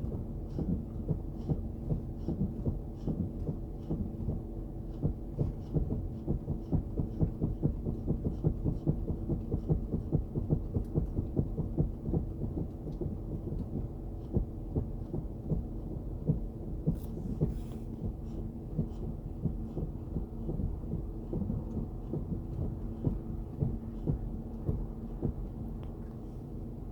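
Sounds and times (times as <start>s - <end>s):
steady low hum: 0.0s - 26.9s
rapid low tapping: 16.3s - 25.6s.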